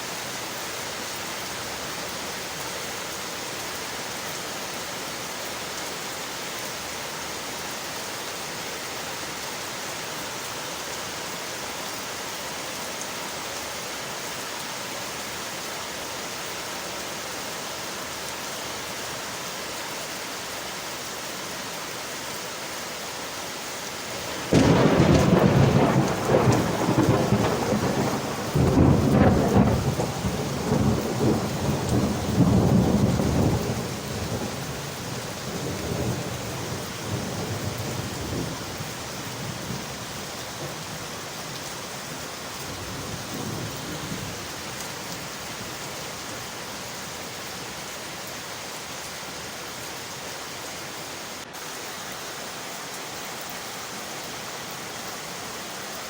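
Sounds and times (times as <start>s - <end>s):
rain on windowpanes: 0.0s - 56.0s
thunder rumble: 24.2s - 40.9s, 42.7s - 44.8s.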